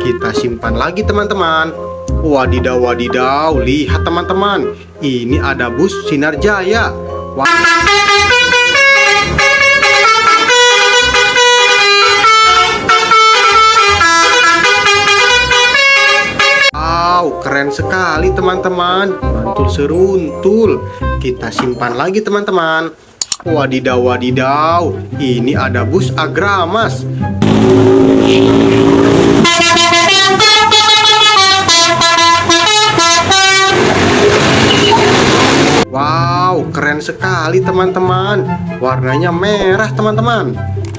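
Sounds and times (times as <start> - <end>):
musical bus horn playing a tune: 7.4 - 16.8, 27.4 - 35.8.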